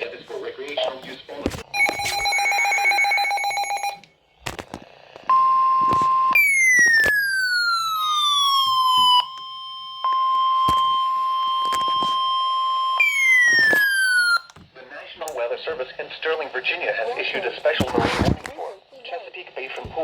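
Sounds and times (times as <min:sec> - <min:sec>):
steady high alarm tone: 0:01.7 - 0:04.0, 0:05.4 - 0:14.5.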